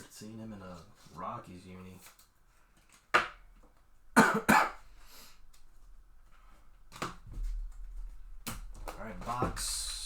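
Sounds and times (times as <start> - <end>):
man coughing: 4.2 - 4.8.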